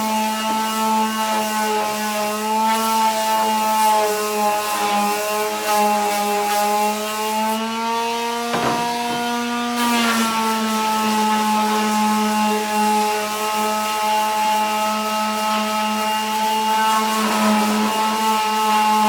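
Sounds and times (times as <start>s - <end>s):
electric sander motor: 0.0s - 19.0s
sandpaper scratching on wood: 0.1s - 8.2s.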